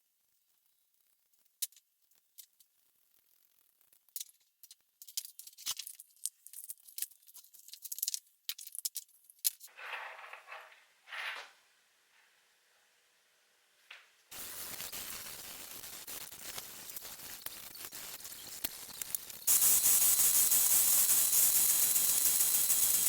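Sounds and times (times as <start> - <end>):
hissing bursts: 14.3 - 23.0.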